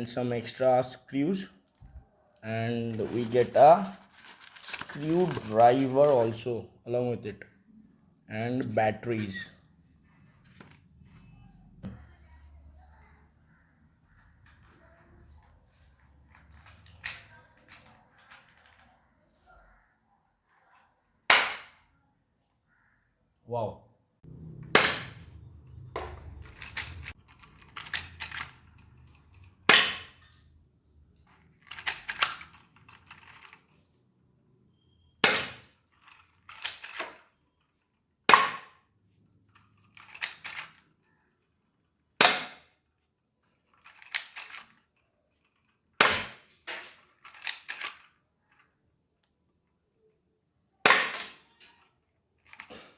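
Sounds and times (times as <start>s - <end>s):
toy air pistol shots: 21.3s - 21.8s, 24.6s - 28.6s, 29.7s - 30.3s, 35.2s - 35.7s, 38.3s - 38.8s, 42.2s - 42.7s, 46.0s - 46.9s, 50.9s - 51.5s
soft clicks and rattles: 24.3s - 33.8s.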